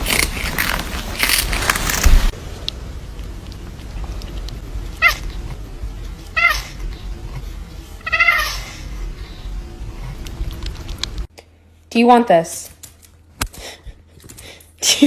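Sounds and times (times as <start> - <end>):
cat meowing: 8.0 - 8.6.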